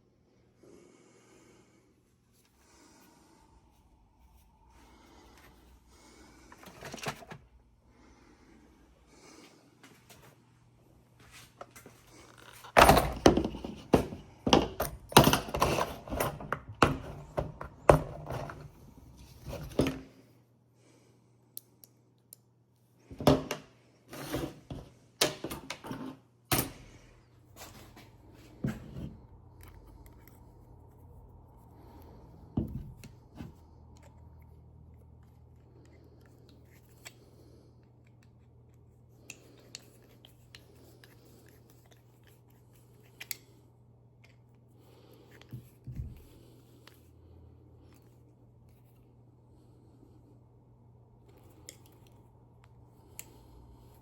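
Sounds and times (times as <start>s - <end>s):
tools clattering and clinking: 12.3s - 18.8s, 23.2s - 27.0s.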